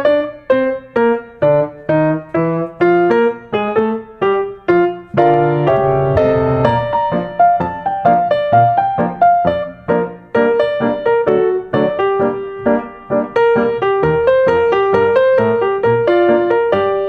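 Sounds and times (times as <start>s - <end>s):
piano music: 0.0s - 17.0s.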